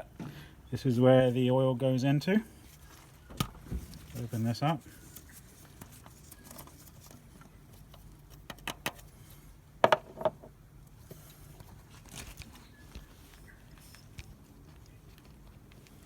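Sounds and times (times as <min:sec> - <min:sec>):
oil filler cap clicks and knocks: 0:09.8 - 0:10.5.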